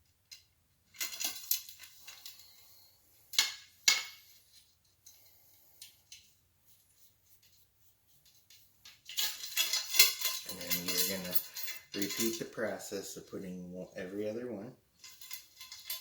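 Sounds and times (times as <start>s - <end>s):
metal spokes clinking: 0.2s - 6.3s, 8.5s - 12.8s, 15.0s - 16.0s.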